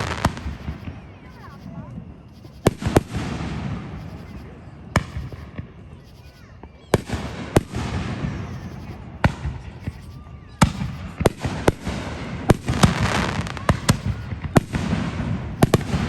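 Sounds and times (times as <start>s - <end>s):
fireworks bangs: 0.0s - 16.0s
fireworks crackling: 0.0s - 16.0s.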